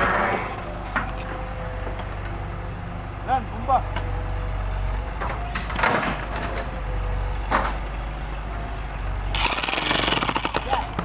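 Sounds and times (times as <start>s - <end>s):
jackhammer hammering ground: 9.3s - 11.0s.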